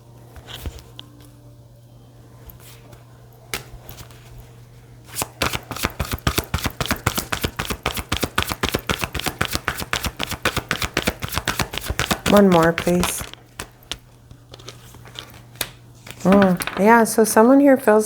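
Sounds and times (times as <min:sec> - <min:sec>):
cards riffling: 0:05.1 - 0:16.8.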